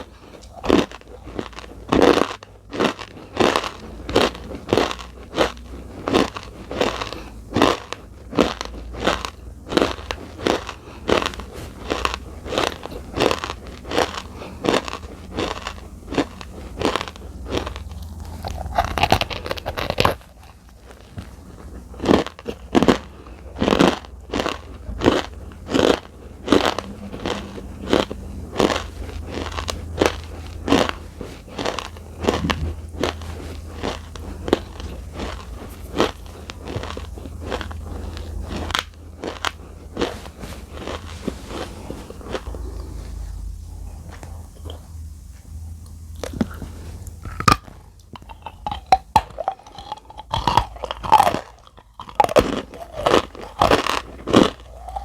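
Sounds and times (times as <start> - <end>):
crisp chewing crunches: 0.0 - 55.0.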